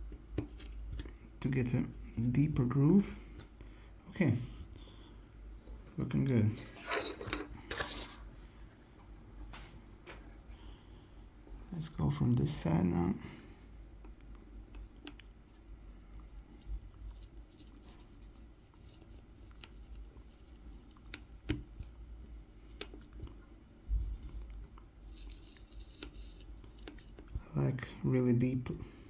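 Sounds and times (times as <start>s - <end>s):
knife scratching wood: 25.0s - 27.2s.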